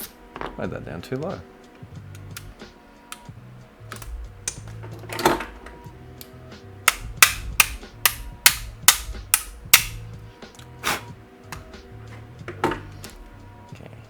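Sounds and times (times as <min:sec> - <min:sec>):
background music: 0:00.0 - 0:14.0
sharp taps on toy shotgun parts: 0:06.9 - 0:10.0.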